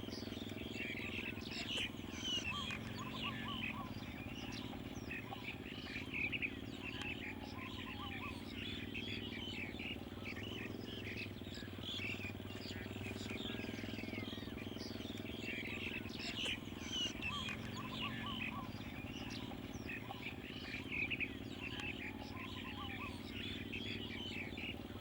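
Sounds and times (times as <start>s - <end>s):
bird chirps: 0.0s - 25.0s
steady low hum: 0.0s - 25.0s.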